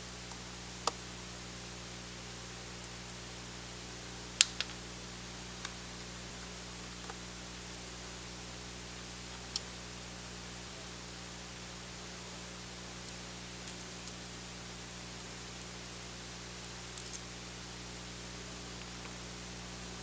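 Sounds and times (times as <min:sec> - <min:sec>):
low electrical hum: 0:00.0 - 0:20.0
steady hiss: 0:00.0 - 0:20.0
sharp click: 0:04.4 - 0:04.8.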